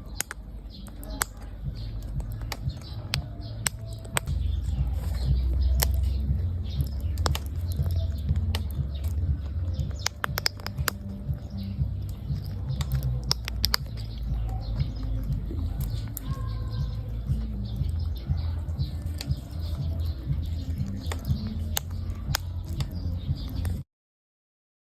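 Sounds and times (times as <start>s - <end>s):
bird chirps: 0.0s - 23.8s
low rumble: 1.4s - 23.6s
parrot cracking seeds: 6.8s - 14.2s.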